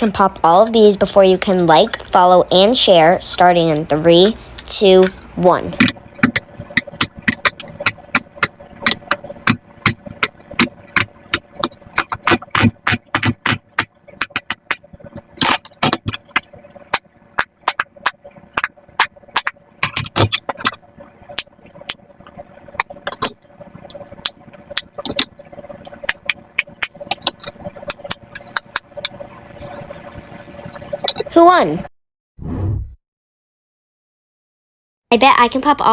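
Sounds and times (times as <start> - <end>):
fidget toy bubbles popping: 24.0 - 29.3.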